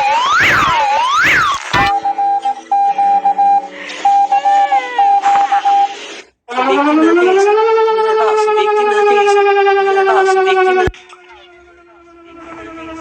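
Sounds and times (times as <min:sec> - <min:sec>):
electronic beep pulses: 0:00.0 - 0:06.0
civil defence siren winding up: 0:00.0 - 0:10.9
wailing siren: 0:00.0 - 0:13.0.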